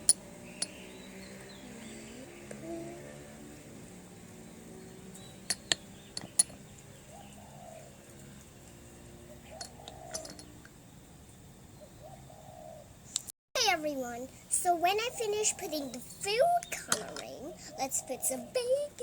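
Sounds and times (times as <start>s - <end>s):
dove cooing: 1.6s - 3.3s, 7.0s - 8.0s, 9.2s - 10.6s, 11.8s - 12.9s, 17.5s - 18.6s
small sharp taps and clinks: 5.5s - 6.6s, 9.6s - 10.5s.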